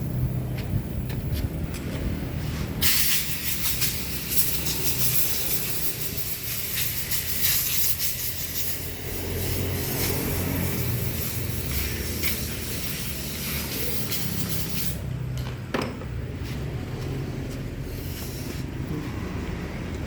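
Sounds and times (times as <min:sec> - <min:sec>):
spray hissing: 0:02.4 - 0:15.1, 0:17.8 - 0:18.8.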